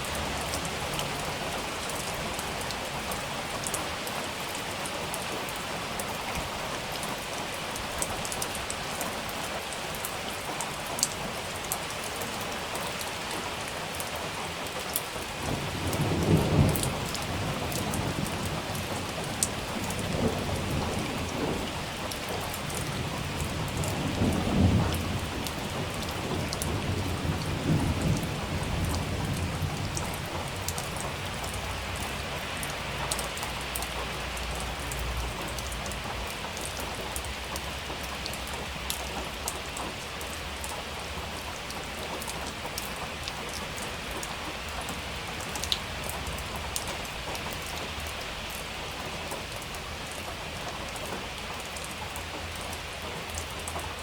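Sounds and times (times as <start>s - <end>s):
heavy rain pattering: 0.0s - 54.0s
rolling thunder: 15.4s - 31.8s.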